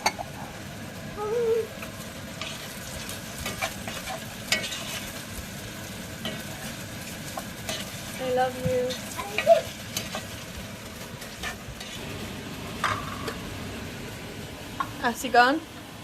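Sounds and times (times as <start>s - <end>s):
potatoes frying in oil: 0.0s - 16.0s.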